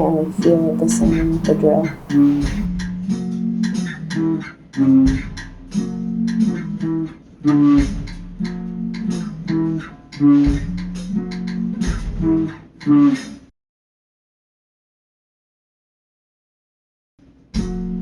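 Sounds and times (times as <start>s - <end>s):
plucked guitar music: 0.0s - 2.7s, 5.4s - 12.0s.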